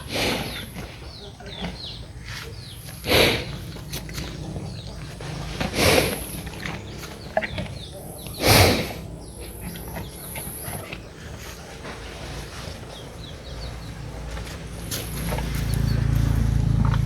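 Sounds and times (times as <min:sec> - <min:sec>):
cow exhaling through nostrils: 0:00.0 - 0:01.0, 0:02.8 - 0:13.4.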